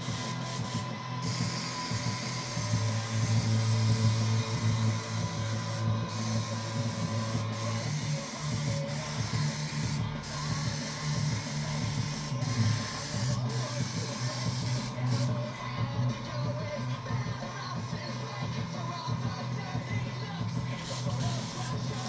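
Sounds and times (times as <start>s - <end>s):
airbrush spraying hiss: 0.0s - 15.4s, 20.7s - 22.0s
steady low hum: 0.0s - 22.0s.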